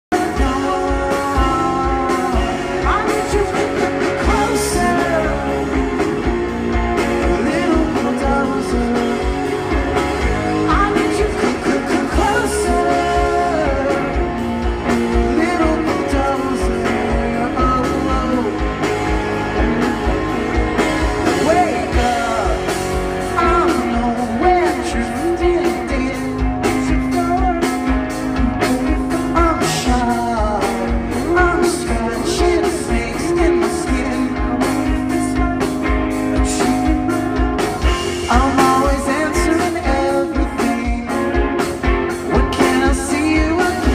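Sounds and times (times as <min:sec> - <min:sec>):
bass guitar: 0:00.0 - 0:43.9
man singing lead: 0:00.0 - 0:43.9
drum beat: 0:00.1 - 0:43.9
electric guitars: 0:00.1 - 0:43.9.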